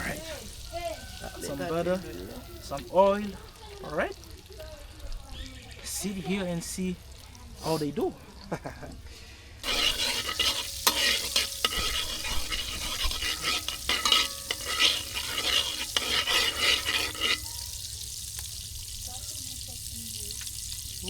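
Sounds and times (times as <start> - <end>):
butter and oil sizzling: 0.0 - 21.0
spoon stirring and scraping pot: 9.6 - 18.5.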